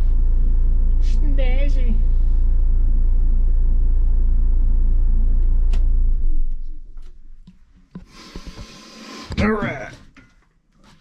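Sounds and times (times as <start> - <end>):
diesel engine idling: 0.0 - 6.8.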